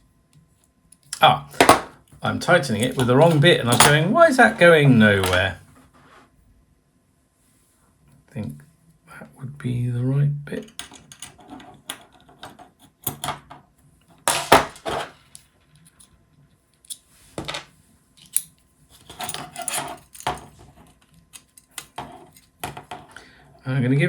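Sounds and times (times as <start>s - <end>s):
metal tools clinking: 2.7s - 4.6s.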